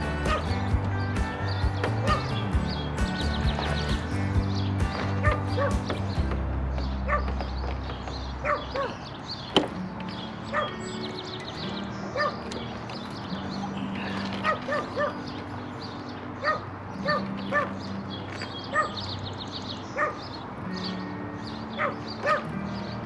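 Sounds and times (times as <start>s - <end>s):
small dog yipping: 16.4s - 17.8s, 18.7s - 19.0s, 20.0s - 20.2s, 21.8s - 22.5s.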